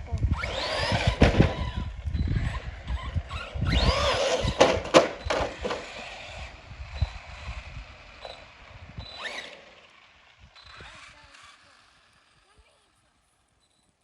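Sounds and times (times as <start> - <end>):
wind rumble on microphone: 0.0 - 9.3
electric rc car motor whining: 0.0 - 14.0.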